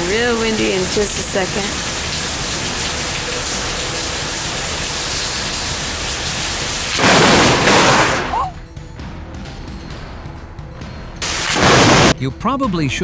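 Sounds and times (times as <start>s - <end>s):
heavy rain: 0.0s - 8.6s, 11.2s - 12.2s.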